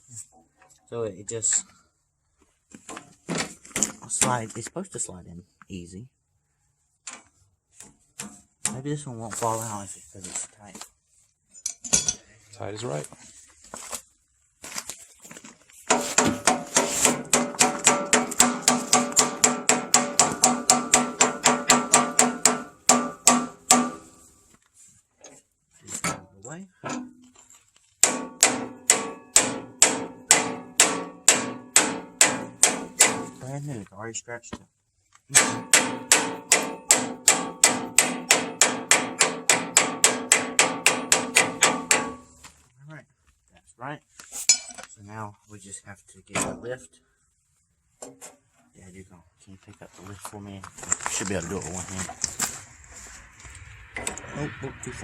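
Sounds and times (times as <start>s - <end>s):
hammer striking metal: 15.9s - 24.2s, 28.0s - 33.4s, 35.3s - 42.3s.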